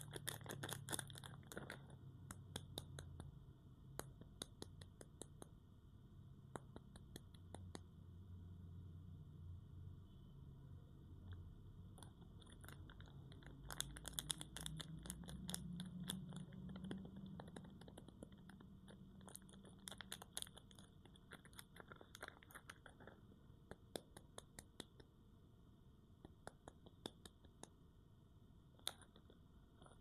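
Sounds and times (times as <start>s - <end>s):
soap crackling and crunching: 0.0s - 3.2s, 12.0s - 23.2s.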